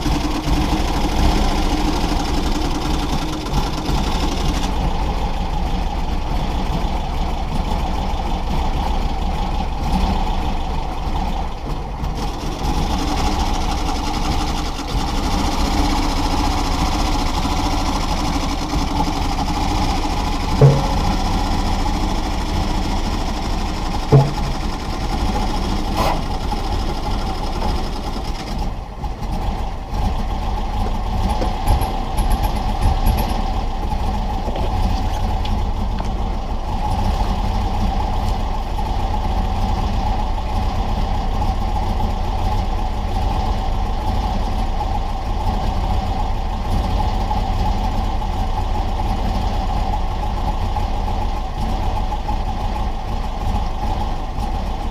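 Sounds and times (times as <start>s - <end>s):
engine running with low hum: 0.0s - 54.9s
short knocks: 20.6s - 21.7s, 24.1s - 25.0s.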